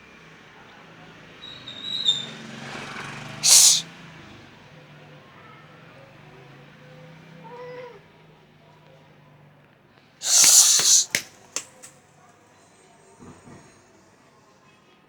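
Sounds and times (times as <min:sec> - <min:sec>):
cat yowling: 0:03.4 - 0:03.8, 0:10.2 - 0:11.2
cat hissing and spitting: 0:03.4 - 0:03.9, 0:10.2 - 0:11.9.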